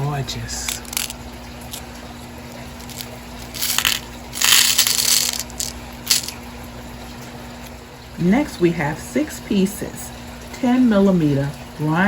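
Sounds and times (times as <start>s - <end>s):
glass beads crinkling in plastic packet: 0.7s - 6.4s.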